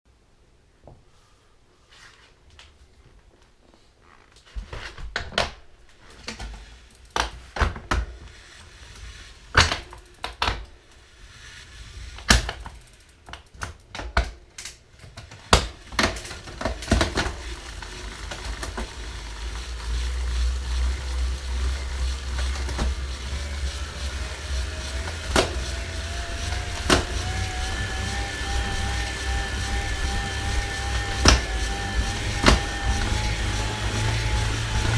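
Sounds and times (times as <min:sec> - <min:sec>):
trainer flywheel whirring: 0:15.8 - 0:34.9
sharp clicks and knocks: 0:31.2 - 0:34.9.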